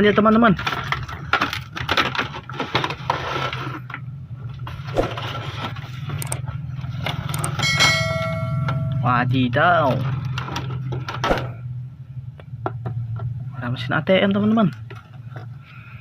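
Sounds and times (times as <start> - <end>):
toy packaging being opened: 0.3 - 4.0
steady low hum: 2.6 - 16.0
held electronic tone: 7.3 - 9.1.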